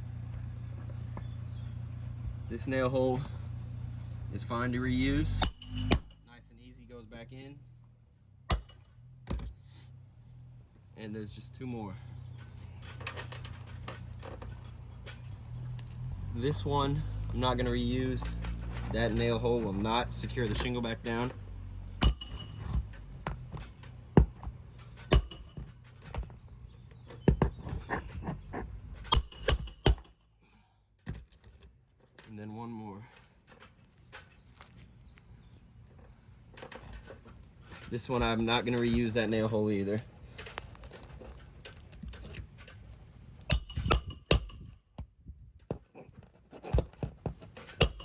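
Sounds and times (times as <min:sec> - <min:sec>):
steady low hum: 0:00.0 - 0:07.7, 0:17.2 - 0:30.7
metal tools tapping roof nails: 0:05.3 - 0:06.2, 0:08.5 - 0:09.5, 0:17.6 - 0:30.2, 0:40.3 - 0:45.1, 0:45.7 - 0:48.0
sharp metallic strikes: 0:05.3 - 0:06.3, 0:22.0 - 0:22.7
scraping and handling noise: 0:12.3 - 0:16.3, 0:17.1 - 0:30.1, 0:31.0 - 0:44.7, 0:45.6 - 0:48.0.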